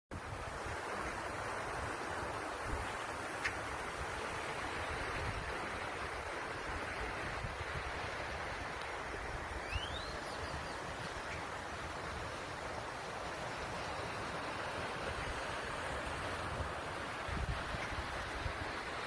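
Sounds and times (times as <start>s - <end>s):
wind rumble on microphone: 13.7s - 19.0s.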